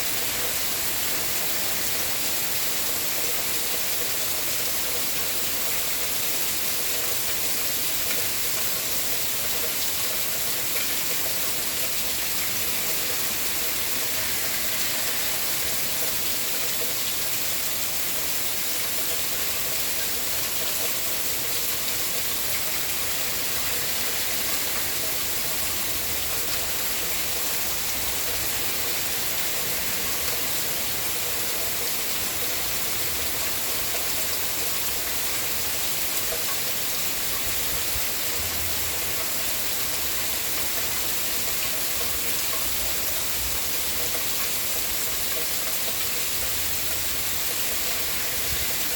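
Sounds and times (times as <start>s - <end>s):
steady rainfall: 0.0s - 48.9s.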